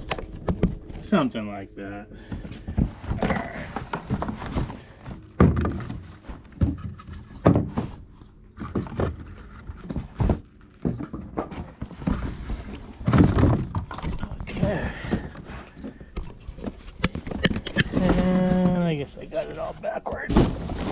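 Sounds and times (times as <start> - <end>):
knocks and thuds: 2.3 - 8.0, 8.6 - 16.2, 20.2 - 20.9
cardboard box handled: 2.3 - 18.8.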